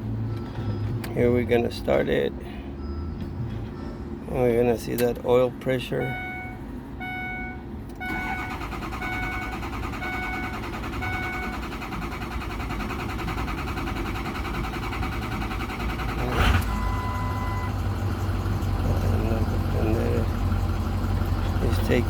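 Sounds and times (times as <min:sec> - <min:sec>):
diesel engine low rumble: 0:00.0 - 0:22.0
dash warning chime dinging: 0:06.0 - 0:11.6
engine cranking by starter: 0:07.9 - 0:22.0.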